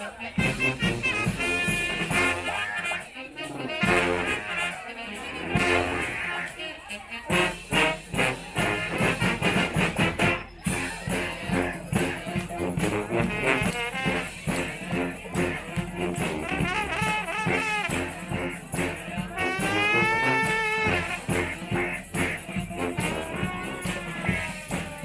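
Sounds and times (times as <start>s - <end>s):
brass band playing: 0.0s - 25.0s
drums and hand percussion: 0.0s - 25.0s.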